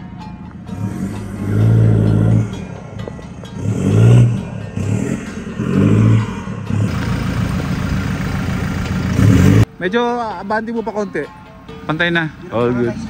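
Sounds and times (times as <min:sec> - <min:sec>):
vehicle engine revving: 0:00.0 - 0:09.8.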